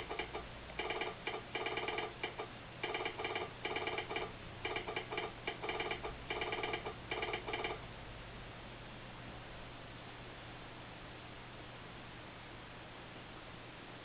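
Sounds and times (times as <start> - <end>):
telegraph sounder clicking morse code: 0.0 - 7.8.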